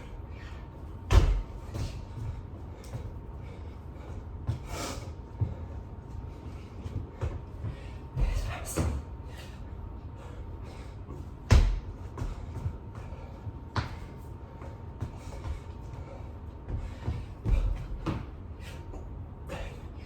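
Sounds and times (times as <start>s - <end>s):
thumps on a floor: 1.1s - 2.0s.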